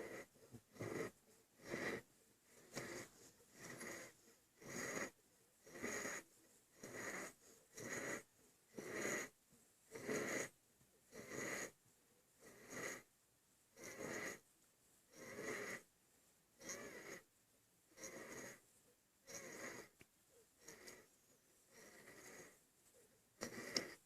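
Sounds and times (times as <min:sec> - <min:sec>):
hard raspy breathing: 0:00.0 - 0:09.3, 0:20.6 - 0:22.6.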